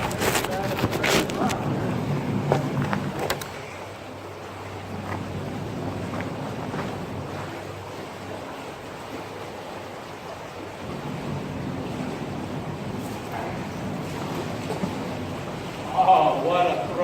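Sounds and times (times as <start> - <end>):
wind on microphone: 0.0 - 3.4
river water rushing: 0.0 - 17.0.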